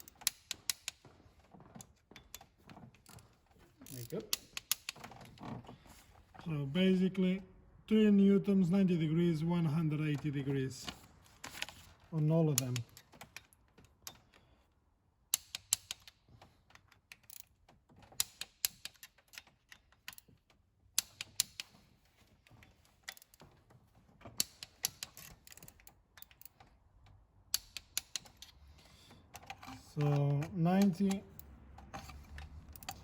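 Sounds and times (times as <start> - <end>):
ratchet wrench clicking: 3.8 - 5.1, 15.3 - 16.2, 18.2 - 20.2, 24.4 - 26.6, 27.5 - 28.6, 30.8 - 33.0.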